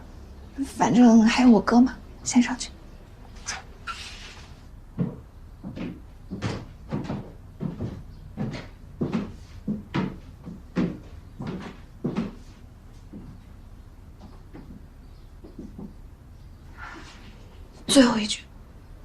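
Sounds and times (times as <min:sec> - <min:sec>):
footsteps: 0:03.4 - 0:13.5.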